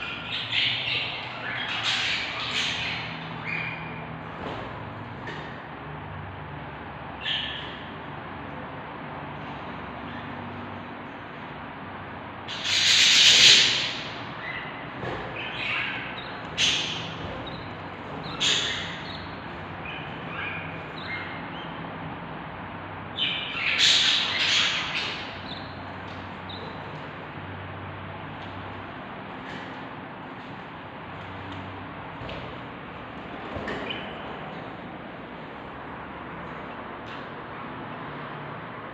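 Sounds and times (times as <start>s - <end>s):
budgerigar chicks cheeping: 12.5s - 21.8s.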